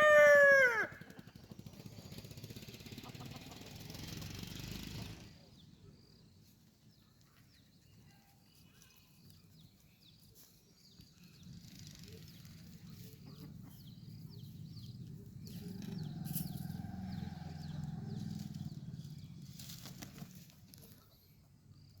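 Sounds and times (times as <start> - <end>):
rooster crowing: 0.0 - 1.0
small birds chirping: 1.2 - 22.0.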